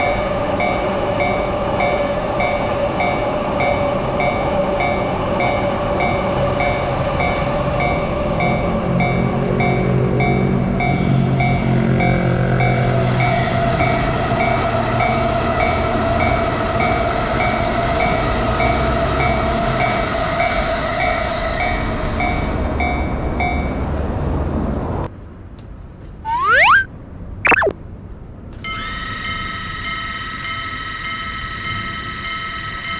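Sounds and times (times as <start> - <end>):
rising whistle-like sweep: 26.3 - 26.9, 27.5 - 27.7
railroad crossing bell ringing: 28.8 - 32.9.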